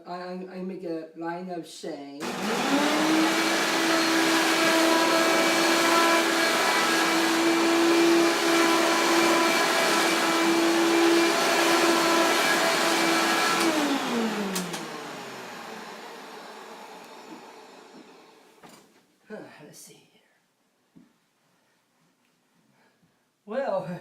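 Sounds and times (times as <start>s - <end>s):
motor winding down: 2.2s - 18.2s
vacuum cleaner motor whine: 2.2s - 18.6s
clicks: 14.5s - 14.9s.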